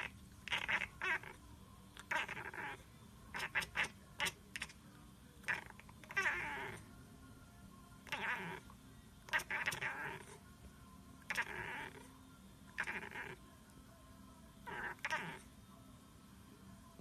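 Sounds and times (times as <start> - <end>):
cat making short pitched calls: 0.0 - 1.4, 2.1 - 4.8, 9.3 - 10.2, 14.7 - 15.4.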